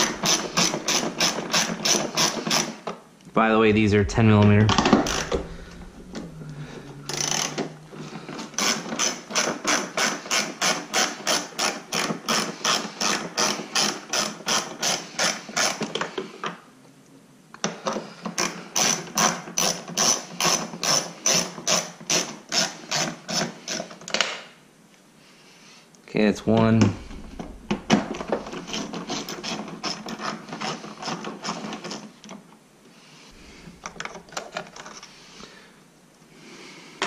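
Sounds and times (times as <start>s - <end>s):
hand ratchet clicking: 0.0s - 2.7s.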